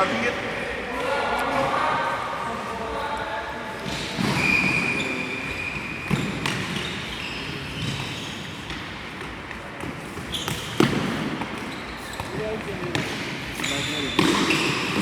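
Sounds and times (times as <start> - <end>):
crowd noise: 0.0 - 6.1.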